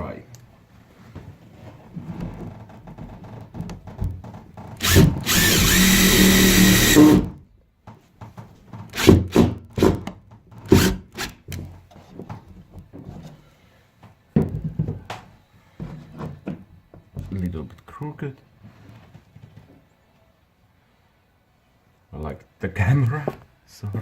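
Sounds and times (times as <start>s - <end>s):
power drill running: 4.8s - 7.4s, 9.0s - 9.2s, 10.7s - 11.4s.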